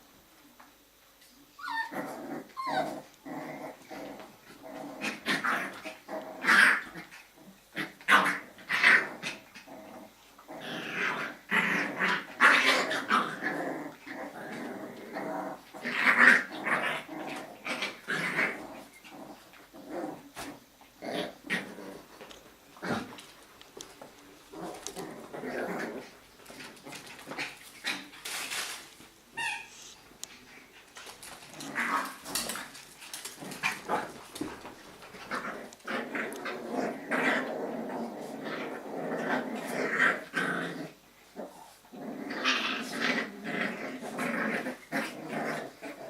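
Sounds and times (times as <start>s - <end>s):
puppies growling and yapping: 1.5s - 46.0s.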